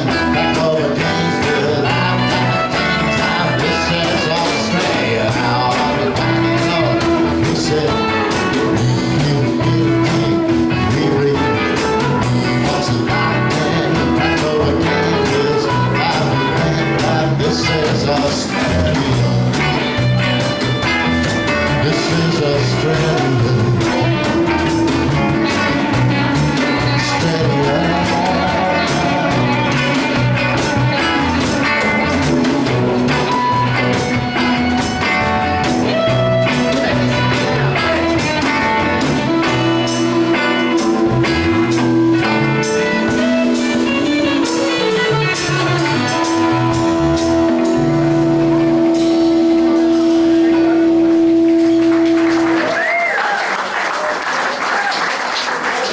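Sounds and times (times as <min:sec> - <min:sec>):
live rock band playing: 0:00.0 - 0:55.9
audience applause: 0:51.4 - 0:55.9.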